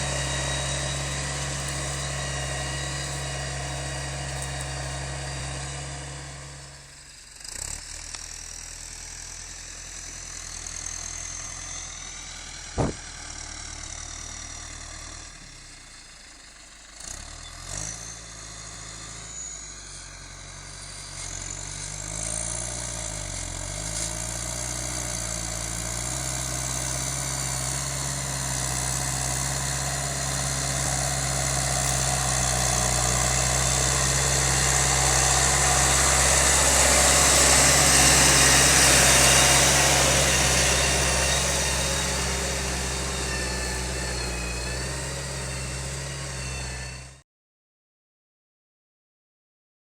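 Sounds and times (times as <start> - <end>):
tractor engine under load: 0.0 - 47.2
short knocks: 12.8 - 13.0.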